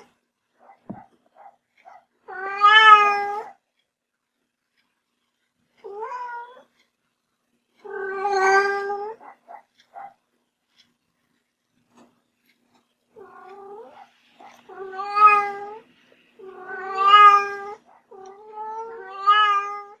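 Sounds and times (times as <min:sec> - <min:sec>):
cat meowing: 0:02.3 - 0:03.6, 0:07.8 - 0:09.3, 0:13.2 - 0:20.0.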